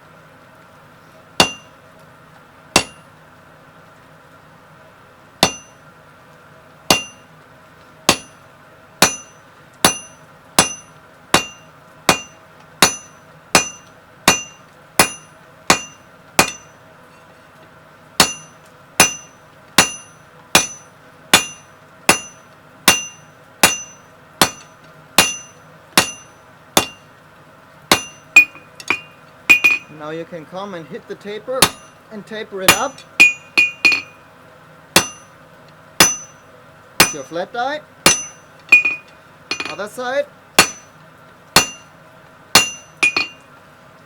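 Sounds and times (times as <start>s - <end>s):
faint steady hum: 0.0s - 44.0s
hammer ringing on an anvil: 1.4s - 1.7s, 2.8s - 3.1s, 5.4s - 5.8s, 6.9s - 7.3s, 8.1s - 8.4s, 9.0s - 16.8s, 18.2s - 27.0s, 27.9s - 29.9s, 31.6s - 32.0s, 32.7s - 34.2s, 35.0s - 35.3s, 36.0s - 36.4s, 37.0s - 37.3s, 38.1s - 39.9s, 40.6s - 41.0s, 41.6s - 41.9s, 42.6s - 43.4s.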